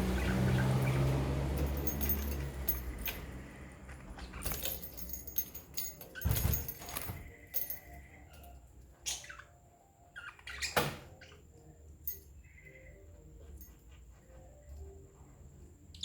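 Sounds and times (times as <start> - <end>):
budgerigars chirping: 0.0 - 1.3, 7.1 - 11.6
sharp clicks and metallic clinks: 0.6 - 8.6.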